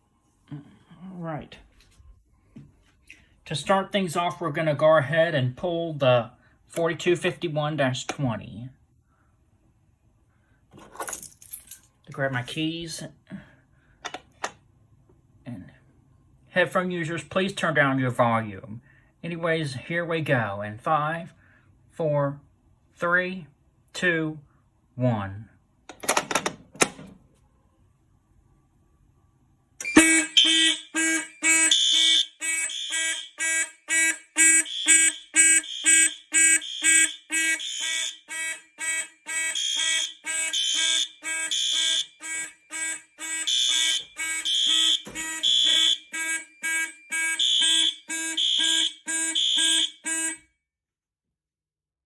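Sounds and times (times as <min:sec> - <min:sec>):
fire alarm horns pulsing: 0:29.8 - 0:50.5.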